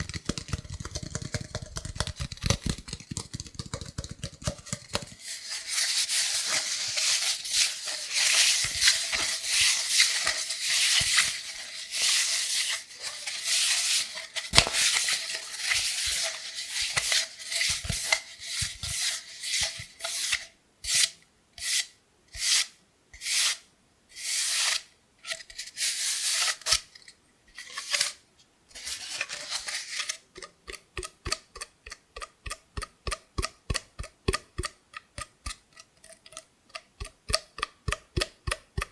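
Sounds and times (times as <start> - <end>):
scratching cardboard tube: 0.0 - 22.7, 24.2 - 26.9, 27.6 - 31.7.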